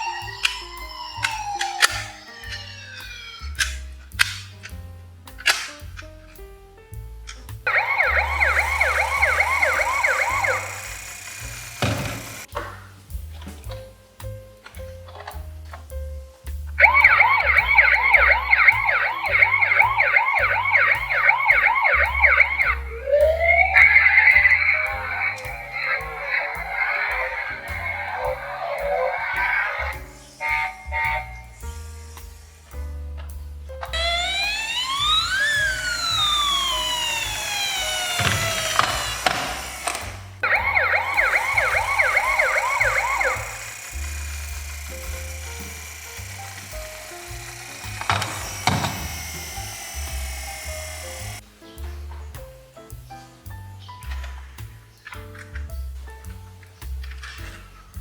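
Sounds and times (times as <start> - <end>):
emergency vehicle siren: 0.0 - 3.7, 7.7 - 11.3, 16.8 - 31.5, 34.0 - 44.1
background music with bass beat: 0.0 - 58.0
sharp clicks: 16.8 - 51.4.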